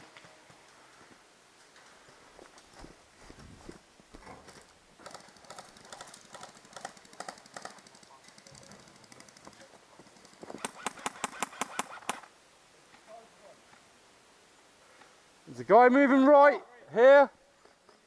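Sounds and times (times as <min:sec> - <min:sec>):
airsoft gun firing: 0:10.5 - 0:12.3.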